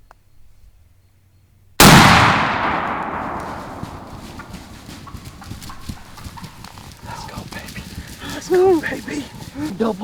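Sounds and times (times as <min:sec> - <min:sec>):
shotgun blast: 0:01.8 - 0:04.7.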